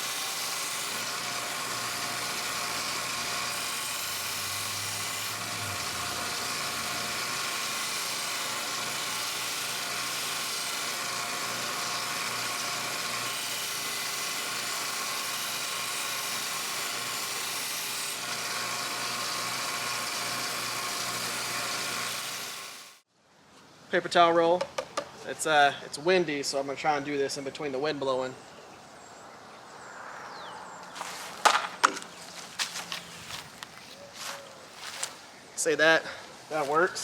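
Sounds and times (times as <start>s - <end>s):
belt grinder sharpening steel: 0.0s - 23.0s.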